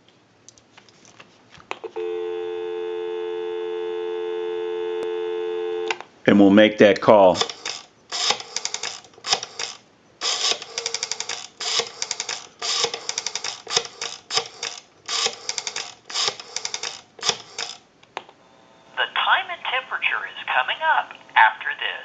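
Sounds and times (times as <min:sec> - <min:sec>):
rotary phone dial clicking: 0:07.4 - 0:17.8.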